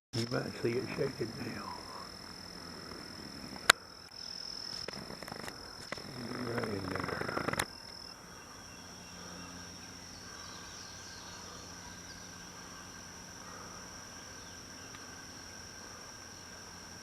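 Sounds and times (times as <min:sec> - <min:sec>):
high-pitched insect drone: 0:00.2 - 0:17.0
faint bird chirps: 0:05.4 - 0:15.4.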